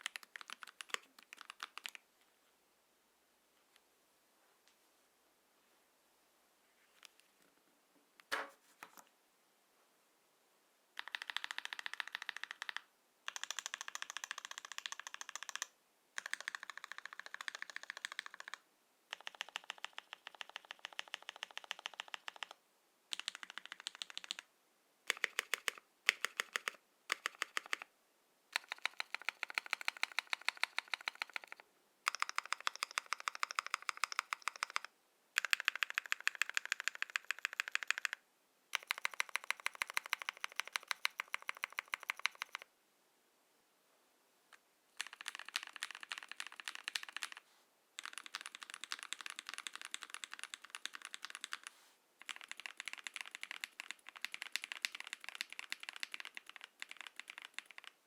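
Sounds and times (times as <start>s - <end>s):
mechanical keyboard typing: 0.0s - 2.0s, 11.0s - 24.5s, 25.1s - 27.9s, 28.6s - 42.7s, 45.0s - 47.4s, 48.0s - 58.0s.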